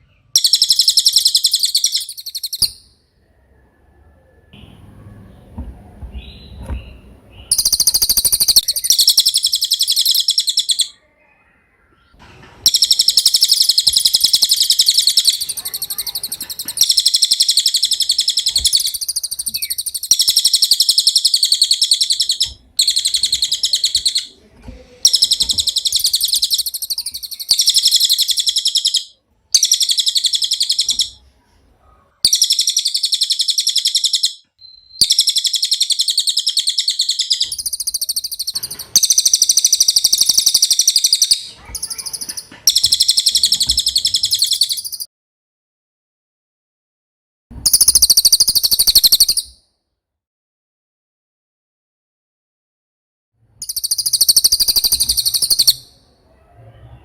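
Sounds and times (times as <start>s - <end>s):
songbird high-pitched trilling: 0.4s - 3.0s, 6.2s - 11.0s, 12.7s - 24.3s, 25.0s - 31.2s, 32.3s - 45.1s, 47.6s - 49.6s, 53.6s - 56.0s.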